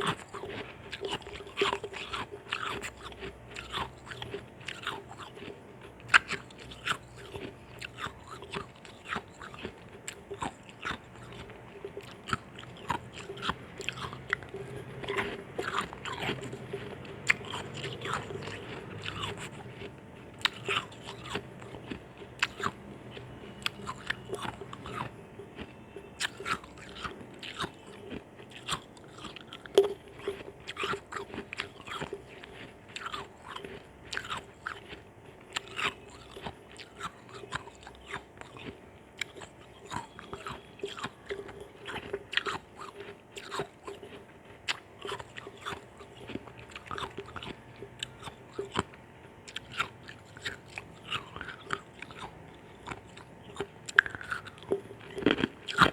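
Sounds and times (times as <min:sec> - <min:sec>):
person crunching ice: 0:26.0 - 0:44.2.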